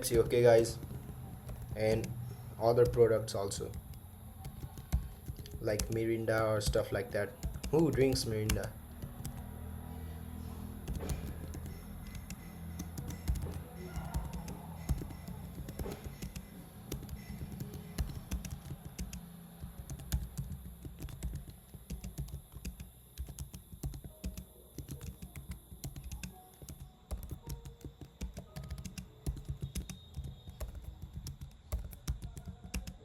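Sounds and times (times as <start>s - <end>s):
typing on computer keyboard: 0.0s - 33.0s.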